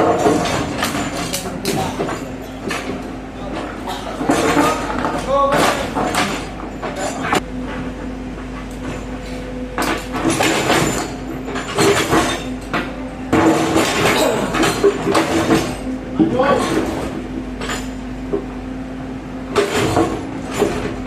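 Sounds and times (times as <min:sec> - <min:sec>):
metallic clinks and clanks: 0:00.0 - 0:03.1, 0:03.9 - 0:07.4, 0:09.8 - 0:15.9, 0:16.6 - 0:18.1
diesel engine running: 0:00.0 - 0:21.0.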